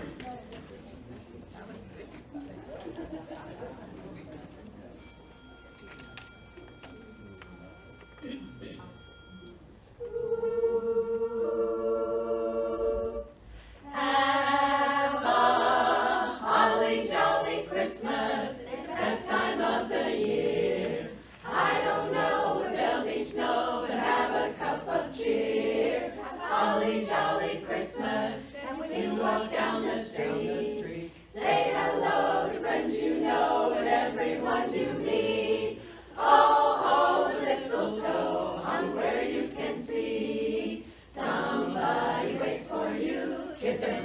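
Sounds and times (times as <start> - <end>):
women's chorus singing a cappella: 10.0 - 44.0.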